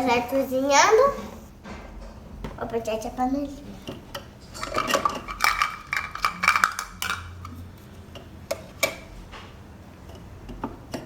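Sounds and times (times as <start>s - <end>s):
toy kitchen pieces clattering: 4.6s - 7.6s.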